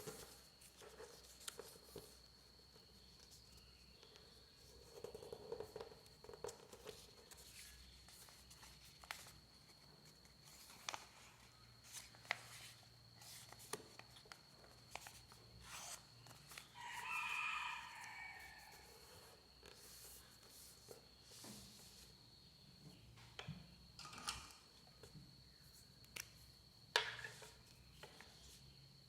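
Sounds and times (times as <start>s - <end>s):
soft clicks of paper creasing: 4.0s - 16.7s
paper rustling: 6.5s - 20.5s
rooster crowing: 16.7s - 19.3s.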